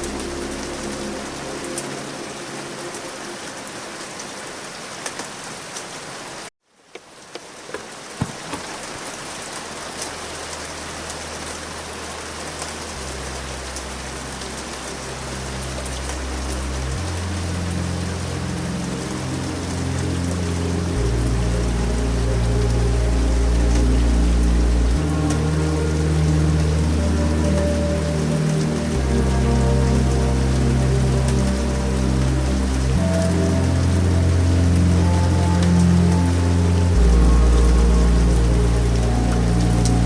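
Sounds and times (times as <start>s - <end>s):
ambient music low tones: 0.0s - 5.0s, 8.2s - 40.0s
steady rain: 0.0s - 40.0s.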